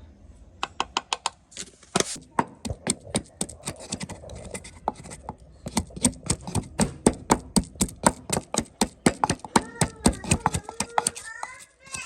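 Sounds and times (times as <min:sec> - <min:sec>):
knife chopping on cutting board: 0:05.7 - 0:12.0.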